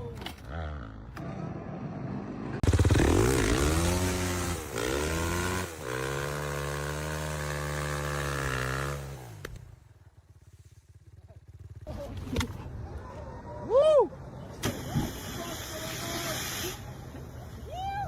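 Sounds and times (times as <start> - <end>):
engine revving: 0.5 - 9.6.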